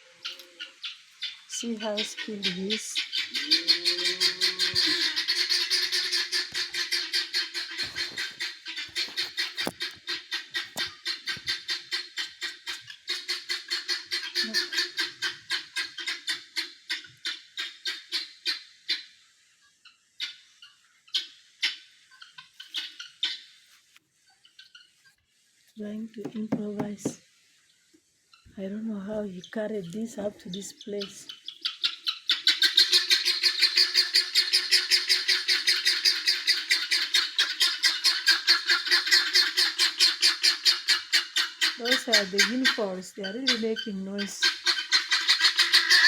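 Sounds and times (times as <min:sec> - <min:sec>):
guinea fowl calling: 0:00.0 - 0:19.2, 0:19.8 - 0:23.8, 0:29.4 - 0:46.0.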